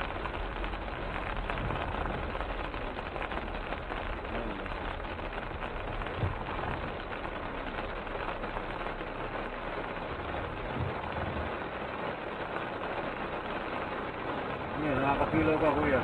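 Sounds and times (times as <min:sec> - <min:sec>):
heavy rain and road noise: 0:00.0 - 0:16.0
low thumps: 0:05.6 - 0:07.6, 0:09.9 - 0:12.0.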